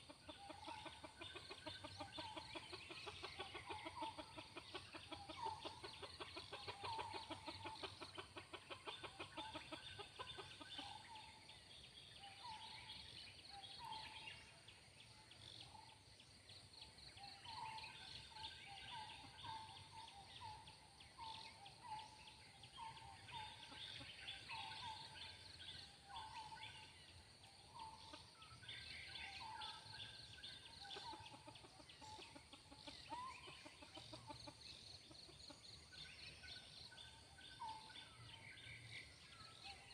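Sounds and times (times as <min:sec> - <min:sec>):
junglefowl clucking: 0:00.0 - 0:11.4, 0:17.2 - 0:26.8, 0:27.6 - 0:35.8.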